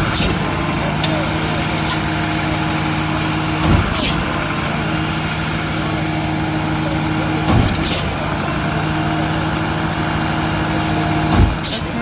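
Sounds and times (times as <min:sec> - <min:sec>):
heavy clunk: 0:00.0 - 0:04.9, 0:06.8 - 0:08.8, 0:11.1 - 0:12.0
diesel truck engines running: 0:00.0 - 0:12.0.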